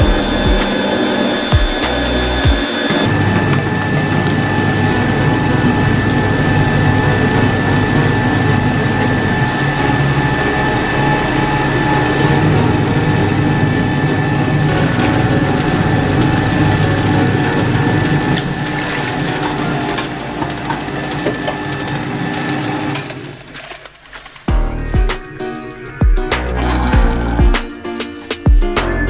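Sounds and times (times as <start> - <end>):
high whine: 0.0 - 21.2
washing machine hum: 0.0 - 24.6.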